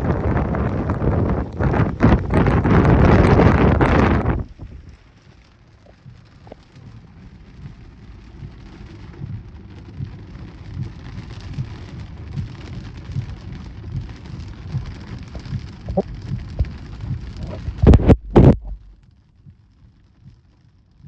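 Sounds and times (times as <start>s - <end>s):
steady rain: 0.0s - 21.0s
regular low thump: 5.9s - 19.6s.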